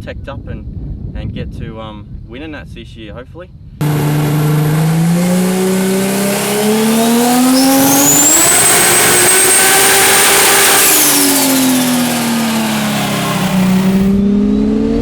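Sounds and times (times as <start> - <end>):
car engine revving hard: 3.8 - 15.0
high turbo whine: 3.8 - 15.0.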